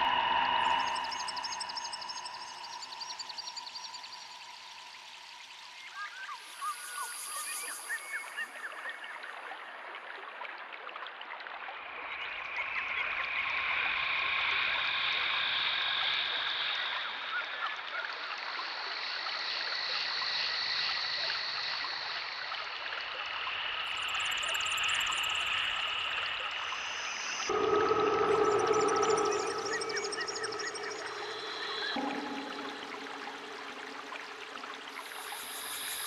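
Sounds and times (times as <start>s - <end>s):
running water: 27.4s - 36.0s
chorus of calling animals: 27.5s - 36.0s
high chirps: 27.5s - 36.0s.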